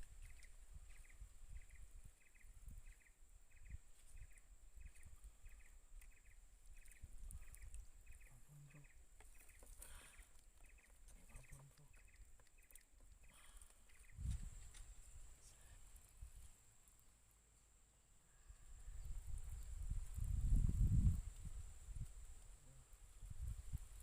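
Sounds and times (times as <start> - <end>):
small animal chirping: 0.1 - 14.8.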